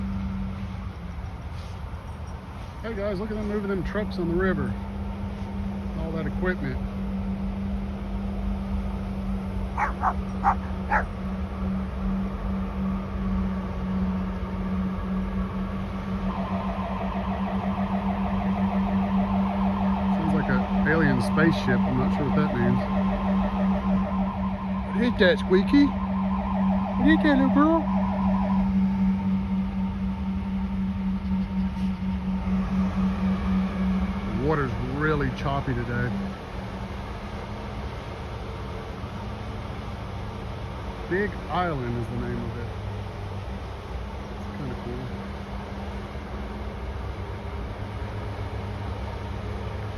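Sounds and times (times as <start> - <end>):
boat engine droning hum: 0.0 - 49.9
dog barking: 9.8 - 11.1
steady low hum: 25.9 - 39.0.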